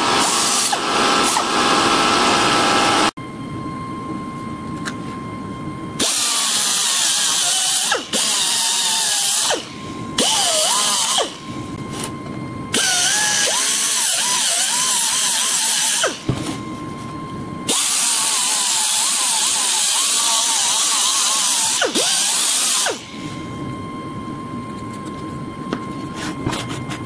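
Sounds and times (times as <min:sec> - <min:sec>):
handheld power tool running: 0:00.0 - 0:03.1, 0:06.0 - 0:11.5, 0:12.7 - 0:16.4, 0:17.7 - 0:23.1.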